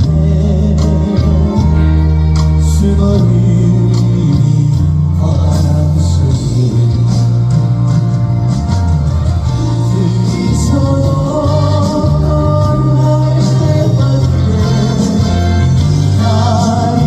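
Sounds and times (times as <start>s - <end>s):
trot song with bass: 0.0s - 17.0s.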